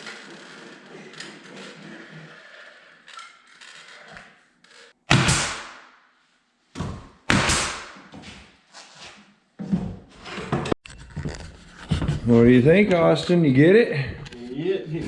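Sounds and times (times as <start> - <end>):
sharp loud knocks: 5.1 - 6.0, 6.8 - 8.1.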